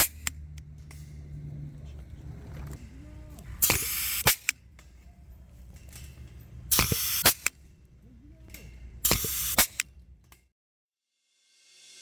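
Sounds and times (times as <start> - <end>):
pneumatic tool air hiss: 0.0 - 0.3, 3.6 - 4.6, 6.7 - 7.5, 9.0 - 9.9
pneumatic tool sharp click: 0.0 - 0.4, 3.5 - 5.0, 6.7 - 7.6, 8.5 - 10.4.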